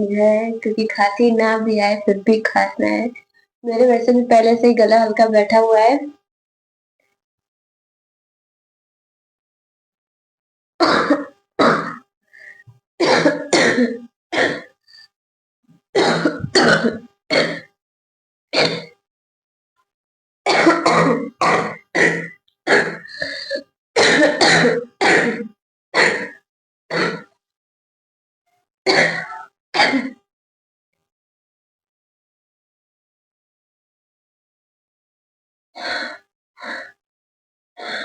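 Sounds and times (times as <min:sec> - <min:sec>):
woman coughing: 0:10.8 - 0:12.0, 0:13.0 - 0:14.7, 0:16.0 - 0:17.7, 0:20.5 - 0:23.3, 0:24.0 - 0:27.3, 0:28.9 - 0:30.2.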